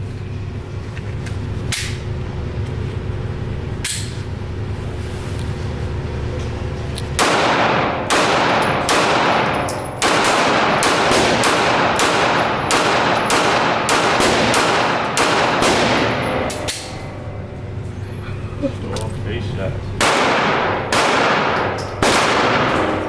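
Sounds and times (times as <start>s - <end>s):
steady low hum: 0.0s - 23.0s
echoing gunshots: 7.2s - 16.5s, 20.0s - 23.0s.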